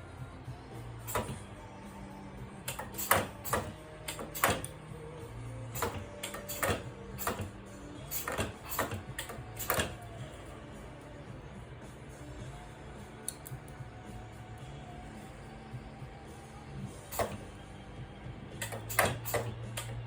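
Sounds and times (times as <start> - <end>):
welding machine low hum: 0.0 - 20.0
spot welder clacks: 1.0 - 1.5, 2.6 - 4.8, 5.7 - 10.1, 17.1 - 17.5, 18.6 - 20.0.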